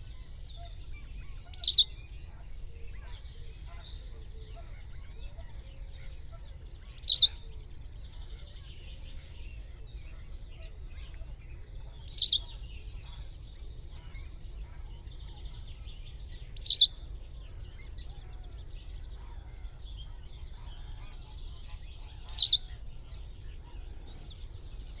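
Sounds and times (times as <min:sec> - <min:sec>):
bird calls sweeping downward: 0:01.5 - 0:01.8, 0:07.0 - 0:07.3, 0:12.1 - 0:12.4, 0:16.6 - 0:16.9, 0:22.2 - 0:22.9.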